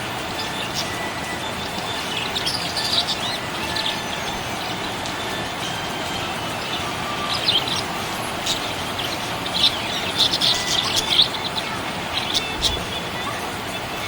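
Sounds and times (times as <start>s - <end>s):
steady background hiss: 0.0s - 14.0s
budgerigar chirping: 6.3s - 13.4s.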